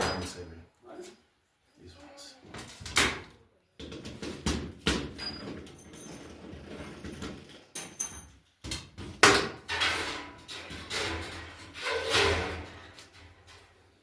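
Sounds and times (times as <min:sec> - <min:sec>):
metal parts and tools clattering: 0:05.2 - 0:08.6, 0:09.5 - 0:13.8.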